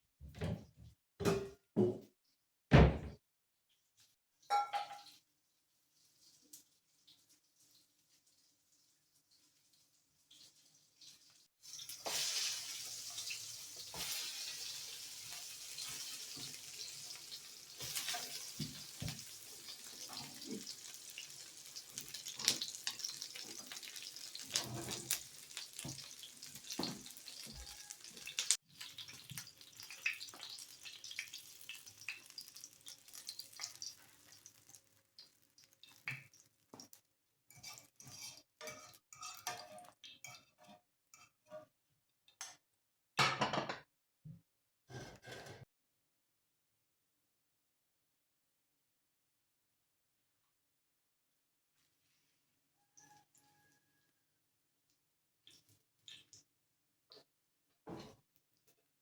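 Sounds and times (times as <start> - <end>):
food sizzling in a pan: 5.0 - 40.3.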